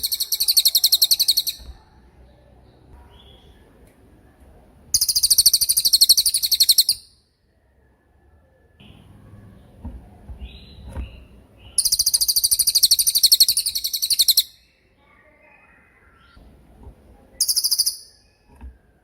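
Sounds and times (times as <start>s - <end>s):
songbird rattling trill: 0.0s - 1.7s, 4.9s - 7.1s, 10.6s - 14.6s, 17.4s - 18.5s
songbird soft chirps: 0.0s - 4.4s, 7.8s - 19.0s.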